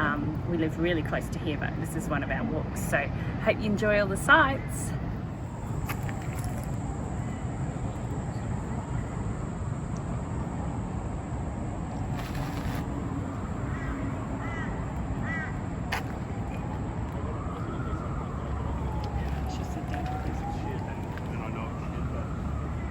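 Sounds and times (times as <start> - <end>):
steady low city rumble: 0.0 - 22.9
bird calling: 13.7 - 15.6.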